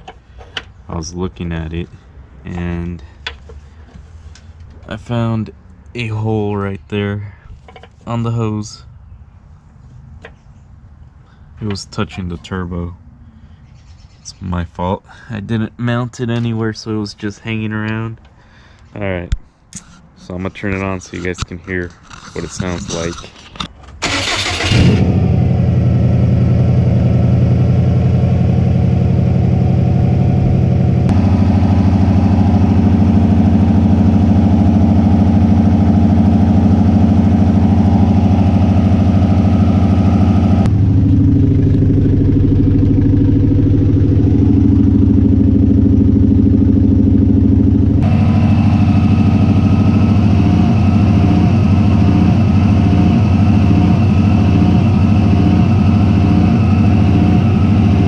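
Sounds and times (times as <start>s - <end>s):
car engine idling roughly: 26.4s - 58.0s.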